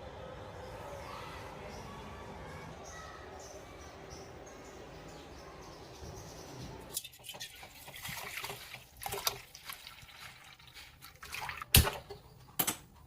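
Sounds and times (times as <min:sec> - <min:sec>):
water splashing and trickling: 0:06.9 - 0:12.2.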